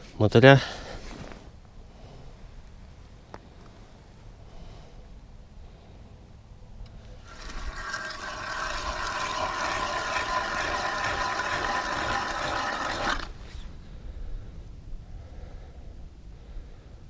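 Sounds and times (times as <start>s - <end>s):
ice auger grinding and whining: 7.2s - 13.6s.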